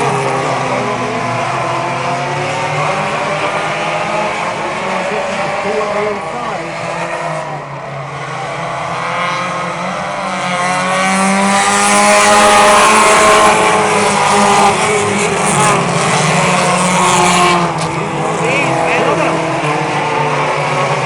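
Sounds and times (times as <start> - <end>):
race car engines passing: 0.0 - 21.0.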